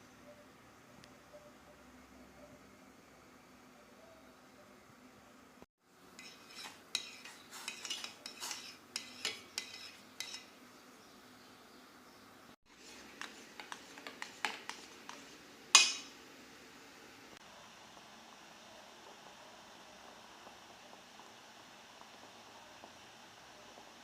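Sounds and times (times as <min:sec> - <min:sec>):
utensils clinking against dish: 0:06.2 - 0:10.5, 0:15.8 - 0:16.1.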